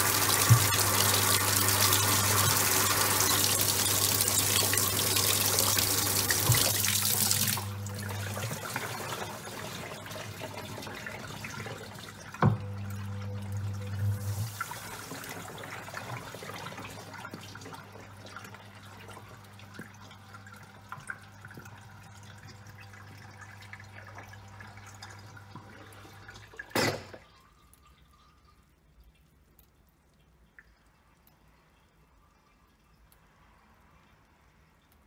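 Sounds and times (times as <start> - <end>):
washing machine motor hum: 0.0 - 27.1
water sloshing and dripping: 0.0 - 33.8.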